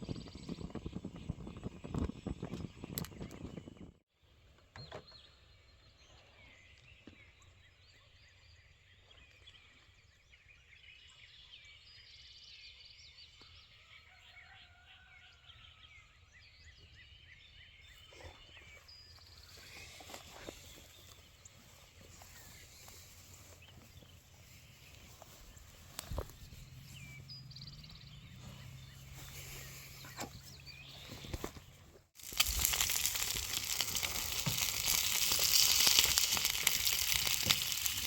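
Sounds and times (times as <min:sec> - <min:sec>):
birds chirping and calling: 0:17.8 - 0:31.7.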